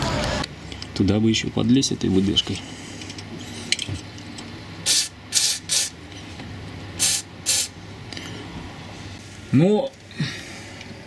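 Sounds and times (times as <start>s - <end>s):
aerosol spray hisses: 4.9s - 5.9s, 7.0s - 7.7s.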